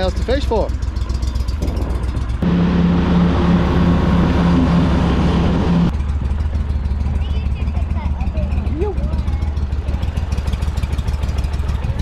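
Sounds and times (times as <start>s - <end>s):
outboard motor running: 0.0s - 12.0s.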